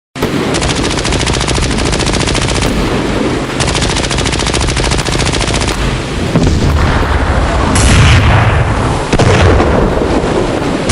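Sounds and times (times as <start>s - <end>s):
automatic gunfire bursts: 0.2s - 6.1s
low battle rumble: 0.2s - 10.9s.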